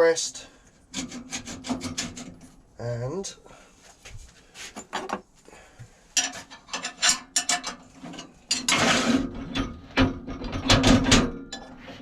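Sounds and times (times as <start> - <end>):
metal scraping rub: 0.9 - 2.6, 7.8 - 9.6
metal parts clicking and clanking: 6.2 - 12.0.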